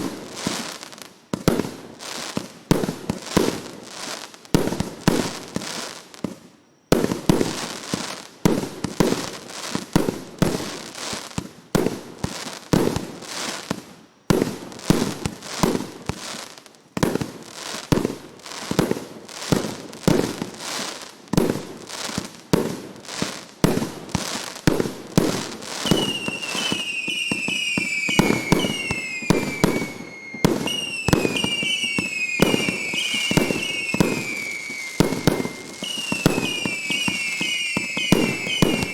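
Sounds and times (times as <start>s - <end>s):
whistling firework shells: 24.7s - 38.9s.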